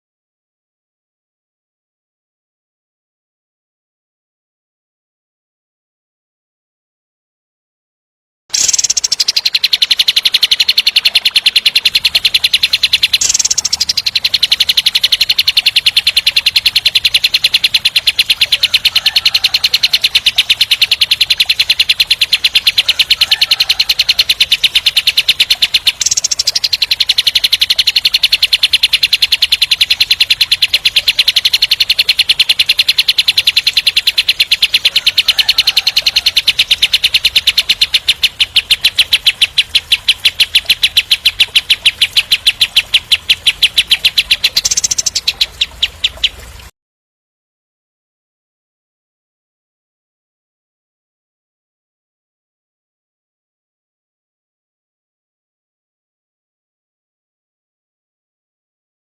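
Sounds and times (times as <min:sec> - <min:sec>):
songbird rattling trill: 0:08.5 - 0:46.7.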